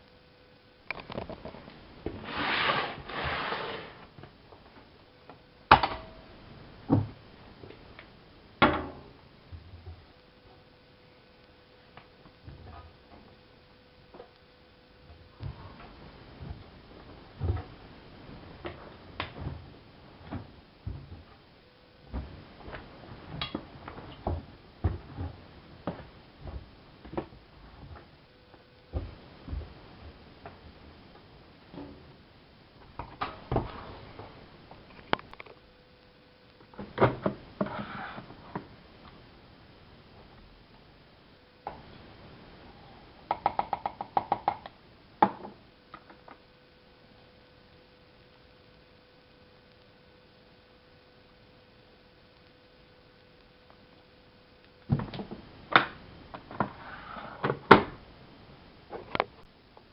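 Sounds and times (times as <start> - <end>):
sliding rustling noise: 2.1 - 4.2
laundry tumbling with thuds: 15.4 - 21.3, 22.0 - 28.0.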